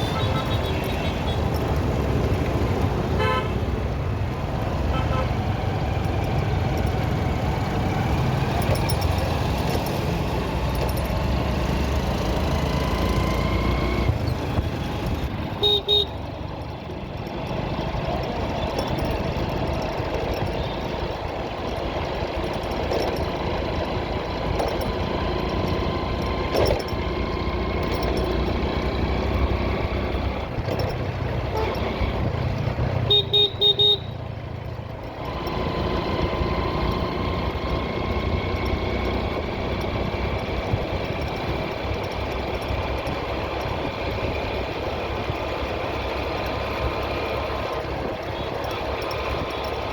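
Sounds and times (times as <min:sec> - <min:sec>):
vehicle engine and road noise: 0:00.0 - 0:49.9
car horn short beeps: 0:03.2 - 0:03.6, 0:15.5 - 0:16.2, 0:31.5 - 0:31.9, 0:33.0 - 0:34.2.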